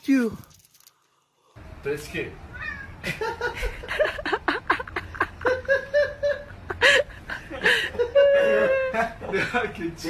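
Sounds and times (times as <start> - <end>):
person laughing: 3.0 - 9.8.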